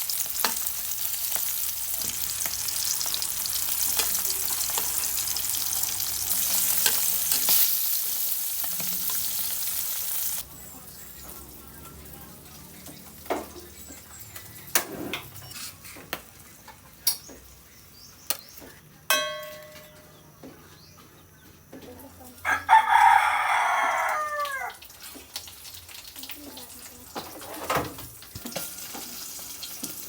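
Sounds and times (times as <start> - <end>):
ringing metallic strike: 19.1 - 20.2
rooster crowing: 22.4 - 24.8.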